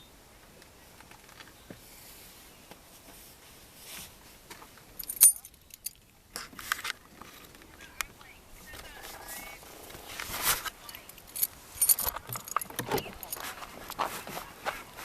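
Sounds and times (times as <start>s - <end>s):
keys jangling: 5.0s - 6.0s, 10.9s - 13.5s.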